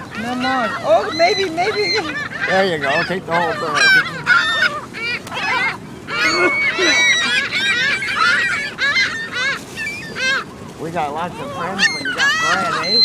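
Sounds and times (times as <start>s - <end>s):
waterfowl honking and calling: 0.0s - 13.0s.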